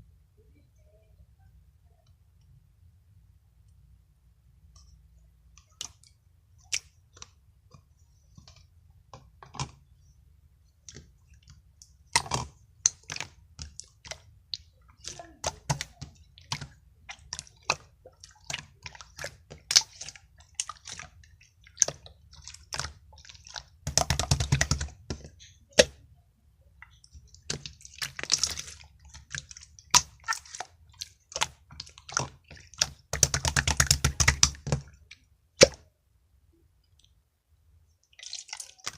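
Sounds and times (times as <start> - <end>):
slime clicking and popping: 10.9 - 26.0, 26.8 - 35.9.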